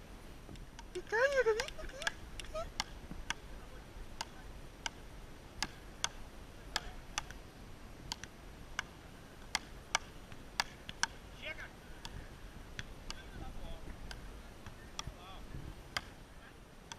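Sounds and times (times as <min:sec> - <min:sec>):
rubber ball clacking off wooden paddles: 0:08.1 - 0:11.2.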